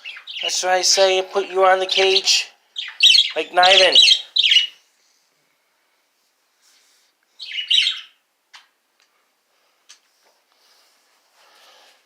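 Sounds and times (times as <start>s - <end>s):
bird chirping: 0.0s - 4.9s, 7.3s - 8.7s.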